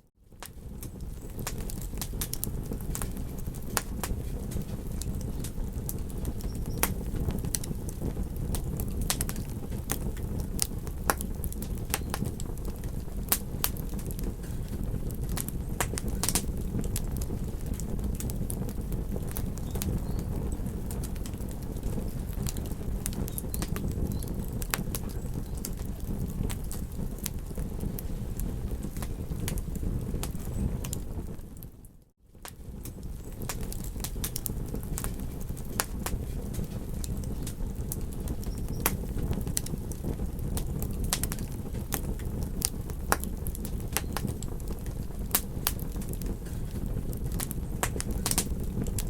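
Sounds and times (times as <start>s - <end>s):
campfire wood crackling: 0.2s - 49.0s
steady low rumble: 0.7s - 31.4s.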